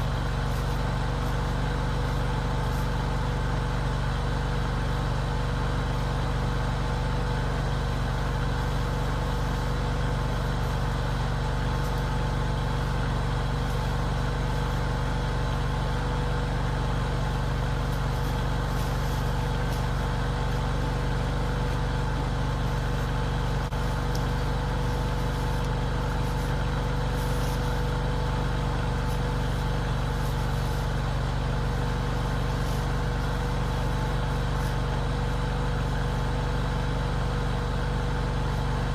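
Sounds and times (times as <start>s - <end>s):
skid steer engine running: 0.0s - 38.9s.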